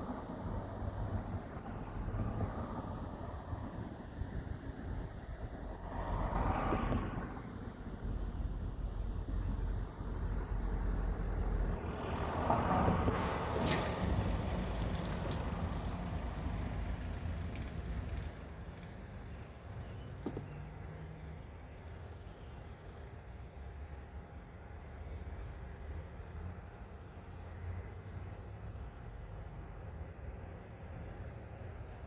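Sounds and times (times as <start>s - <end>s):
low traffic rumble: 0.0s - 32.0s
vehicle passing: 4.7s - 8.3s.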